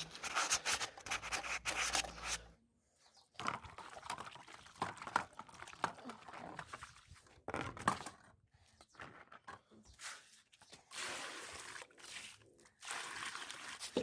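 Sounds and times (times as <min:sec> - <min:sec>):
light scrapes and clicks: 0:00.0 - 0:02.6.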